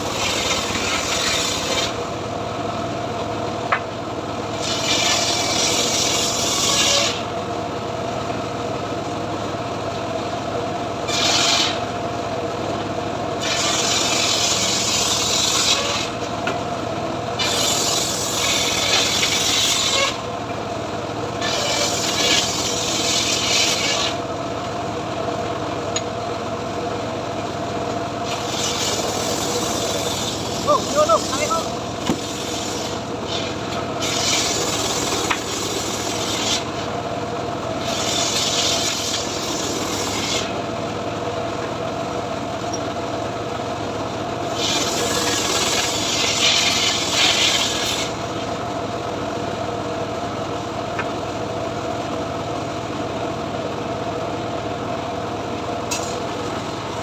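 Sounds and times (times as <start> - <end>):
saw blade rasping: 0.0 - 2.1, 4.6 - 7.3, 11.1 - 11.9, 13.4 - 16.2, 17.4 - 20.3, 21.4 - 24.2, 28.2 - 36.9, 37.8 - 40.6, 44.5 - 48.2
sawmill motor humming: 0.0 - 2.4, 17.3 - 37.0.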